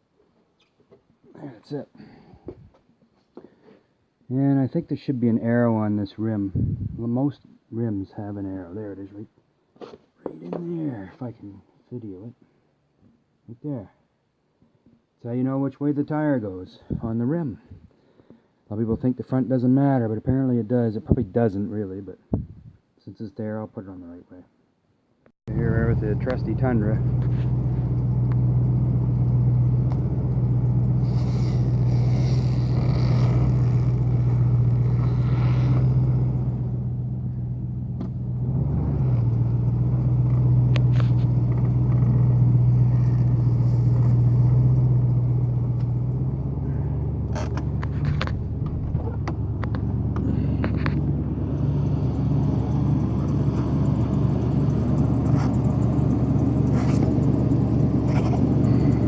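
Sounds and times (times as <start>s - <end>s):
truck engine humming: 25.5s - 59.0s.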